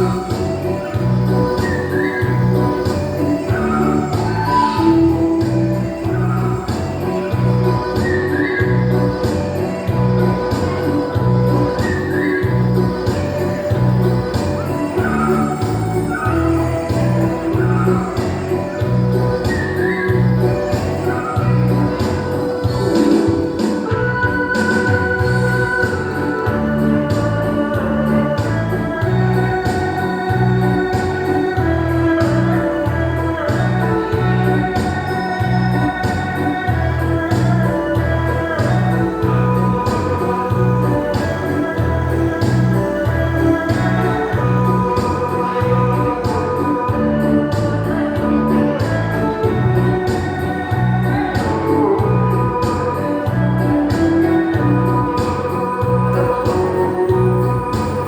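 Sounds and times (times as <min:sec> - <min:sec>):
electronic dance music: 0:00.0 - 0:58.0
pulsing bass line: 0:00.0 - 0:58.0.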